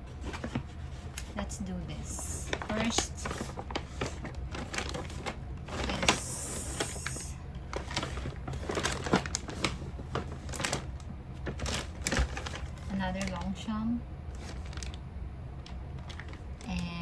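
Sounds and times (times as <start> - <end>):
packaging clicks and crinkles: 0.1 - 13.6, 14.3 - 15.0, 15.6 - 16.9.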